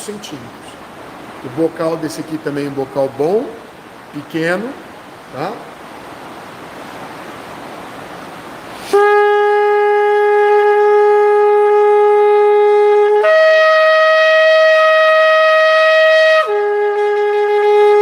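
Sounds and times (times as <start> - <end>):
shofar blown: 8.8 - 18.0.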